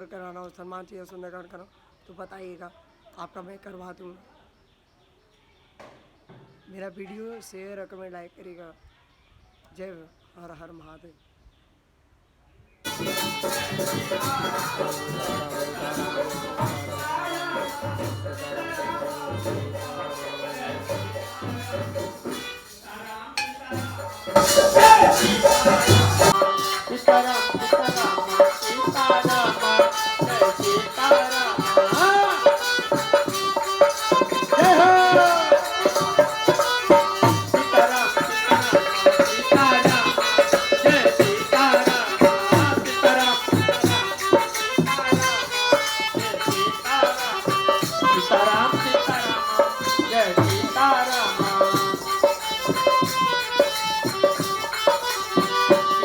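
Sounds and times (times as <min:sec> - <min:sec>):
fast steady percussion: 0:12.9 - 0:56.0.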